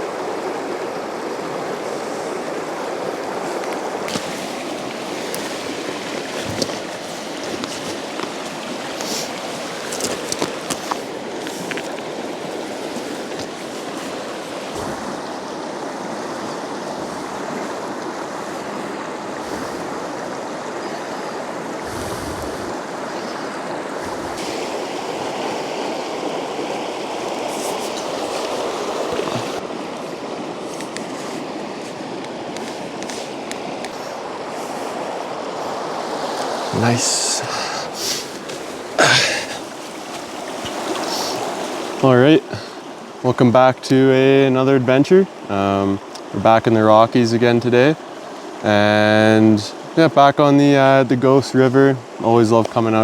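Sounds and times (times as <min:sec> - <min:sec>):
river flowing: 0:00.0 - 0:53.0.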